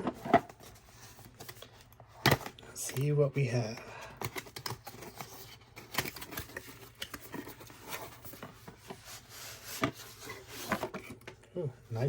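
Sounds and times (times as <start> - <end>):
cardboard packaging handled: 4.2 - 11.4.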